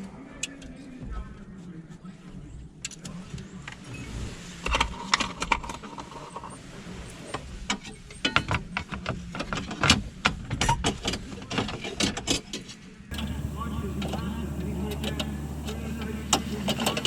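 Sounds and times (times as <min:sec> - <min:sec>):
parts clicking and knocking: 0:13.1 - 0:17.0.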